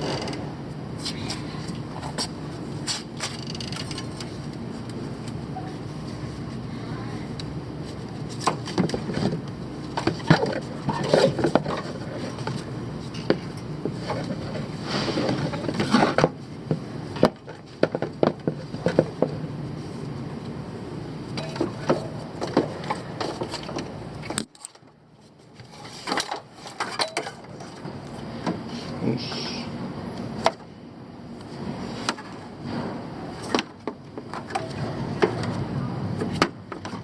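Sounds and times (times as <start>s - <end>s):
steady low hum: 0.0s - 37.0s
tools clinking on metal: 26.1s - 27.5s.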